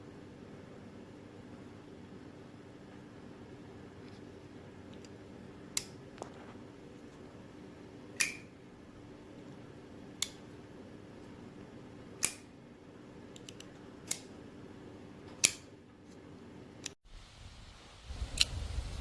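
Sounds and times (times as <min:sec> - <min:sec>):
folding knife blade clicking: 0:08.2 - 0:08.5, 0:12.2 - 0:12.5, 0:13.4 - 0:14.3, 0:15.4 - 0:15.7.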